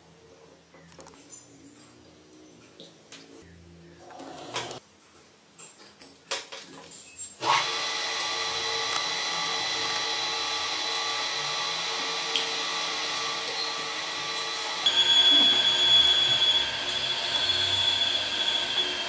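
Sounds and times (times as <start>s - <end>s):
electric power tool whining: 7.4s - 19.0s.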